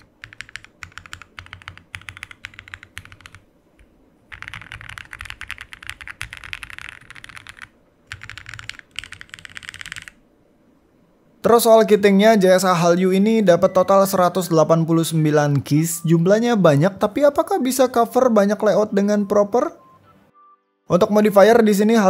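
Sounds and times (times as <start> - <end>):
mechanical keyboard typing: 0.0 - 10.2.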